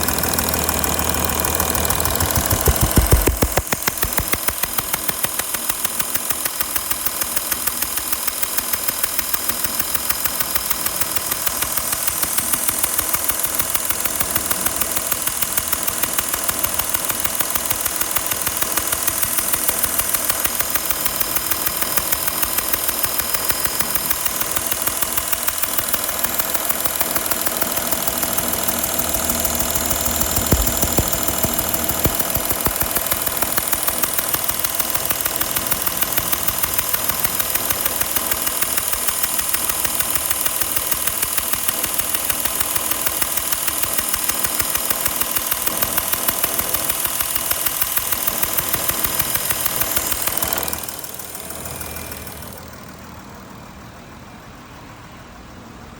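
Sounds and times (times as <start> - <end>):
diesel engine idling with ticking: 0.0 - 55.9
thumps: 2.0 - 4.4.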